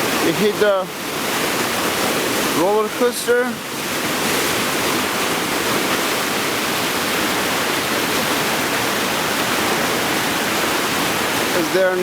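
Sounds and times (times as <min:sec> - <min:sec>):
river rapid rushing: 0:00.0 - 0:12.0.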